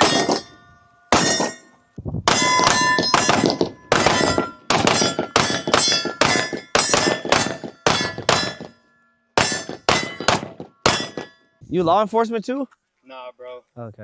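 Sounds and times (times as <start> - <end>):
metallic ringing of targets: 0.0 - 11.6
gunshots: 2.3 - 8.7, 9.4 - 11.3.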